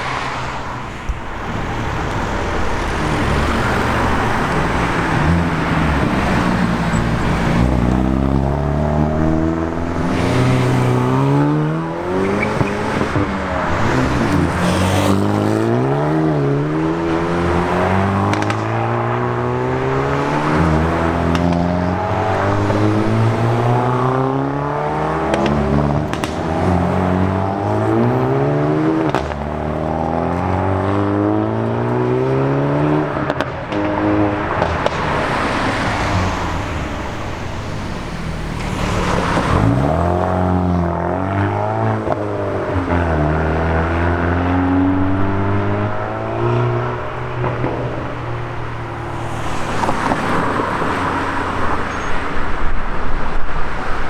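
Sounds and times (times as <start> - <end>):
exhaust pops: 0.0 - 8.5, 25.3 - 26.8, 33.1 - 40.9, 42.0 - 53.9
car engines accelerating hard: 0.0 - 54.0.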